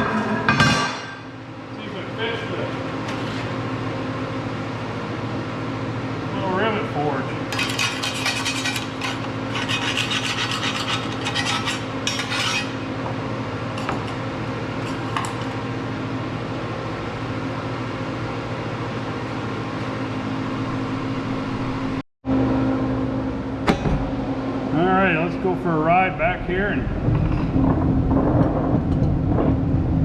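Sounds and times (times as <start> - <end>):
steady machine hum: 0.0 - 30.0
scraping and rubbing: 7.5 - 12.9.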